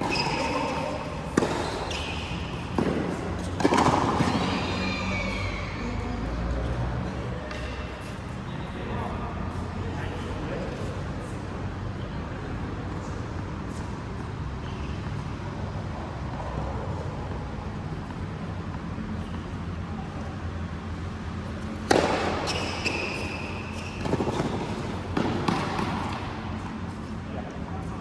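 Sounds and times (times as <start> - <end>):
racket hitting ball: 0.0 - 4.7, 21.7 - 26.7
shoes squeaking on court floor: 0.0 - 9.2, 13.6 - 15.6, 21.4 - 27.2.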